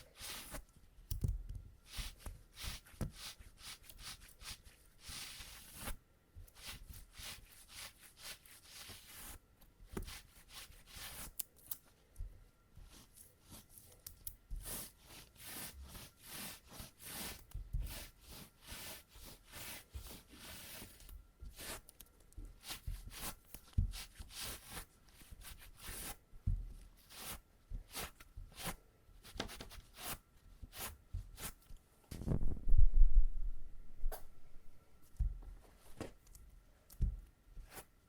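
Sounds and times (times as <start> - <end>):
soft thumps: 35.1 - 36.2.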